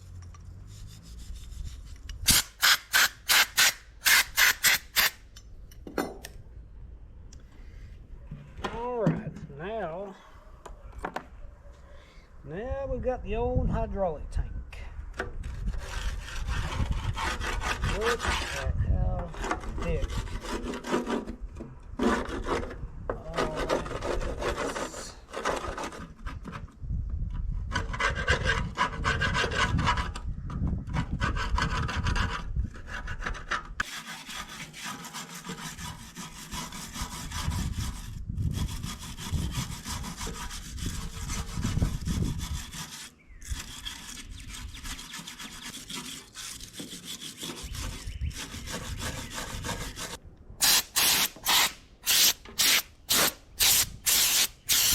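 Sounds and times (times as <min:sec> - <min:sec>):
hand scraping grime off metal: 0:15.5 - 0:21.4, 0:22.0 - 0:26.5, 0:31.0 - 0:54.9.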